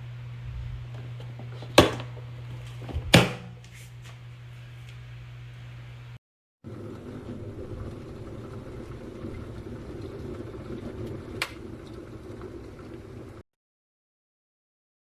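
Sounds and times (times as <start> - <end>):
electric kettle heating water: 6.6 - 13.5.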